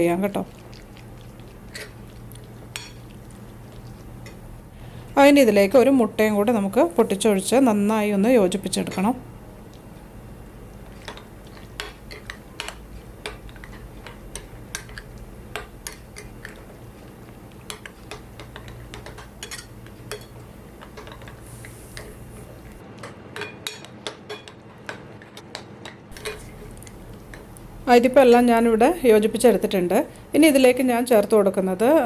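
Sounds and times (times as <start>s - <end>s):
spoon clinking and scraping bowl: 1.3s - 3.2s, 10.9s - 16.8s, 17.7s - 22.1s, 26.1s - 27.5s.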